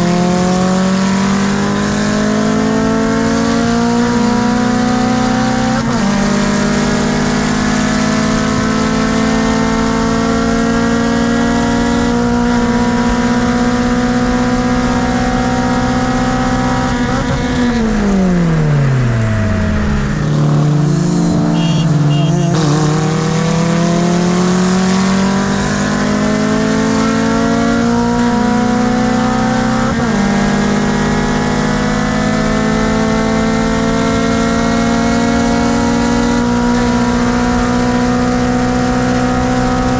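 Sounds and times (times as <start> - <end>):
car engine revving under load: 0.0 - 39.9.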